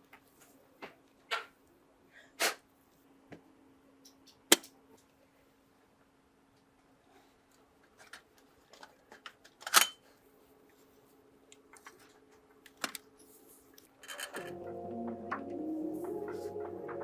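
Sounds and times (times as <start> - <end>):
clicks of small parts handled: 14.0 - 14.5
music: 14.2 - 17.0.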